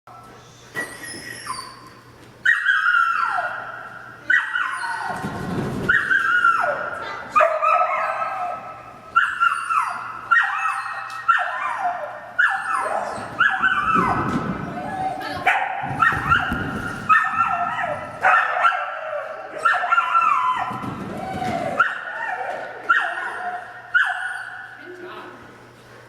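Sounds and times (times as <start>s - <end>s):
dog yelping barks: 2.5s - 5.2s, 5.9s - 20.7s, 21.6s - 24.7s.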